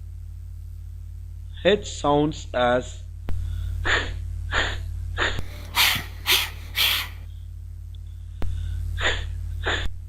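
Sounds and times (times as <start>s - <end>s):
low mains hum: 0.0s - 10.0s
breathy huffs of voice: 3.5s - 7.2s.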